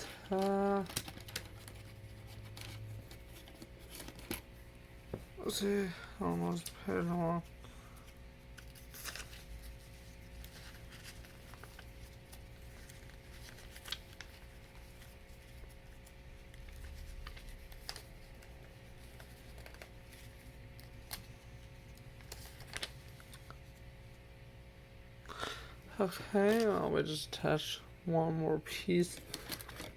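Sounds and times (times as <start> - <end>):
low steady hum: 0.0 - 29.9
plastic parts clicking and rattling: 0.2 - 4.5, 29.1 - 29.9.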